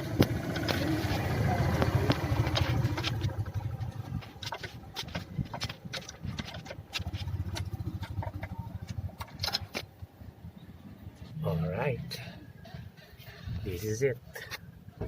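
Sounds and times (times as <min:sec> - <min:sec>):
hand tools clicking on bolts: 0:01.8 - 0:09.9.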